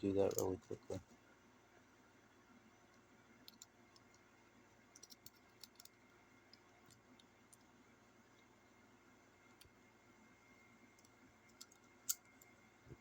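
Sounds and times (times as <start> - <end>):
metallic clicks of cartridges loading: 3.5 - 4.2, 4.9 - 7.7, 11.0 - 12.5.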